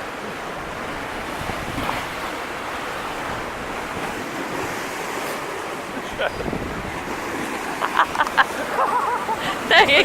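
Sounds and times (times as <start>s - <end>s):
wind gusting over microphone: 0.7s - 7.8s.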